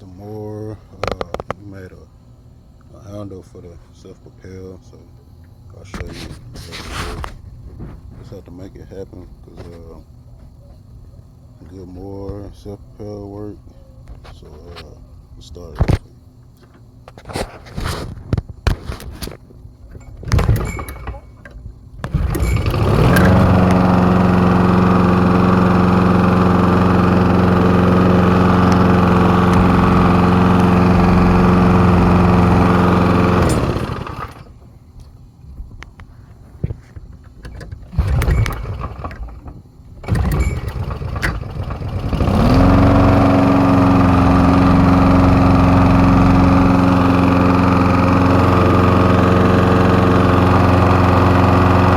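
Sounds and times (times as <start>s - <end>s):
pull-start cord pulls: 20.0s - 34.6s, 37.4s - 51.9s
lawn mower engine running: 20.1s - 34.8s, 37.6s - 51.9s.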